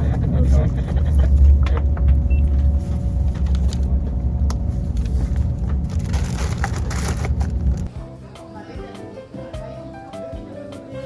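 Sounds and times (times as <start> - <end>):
faint constant hum: 0.0 - 7.9
vehicle rumble from inside cabin: 0.0 - 7.9.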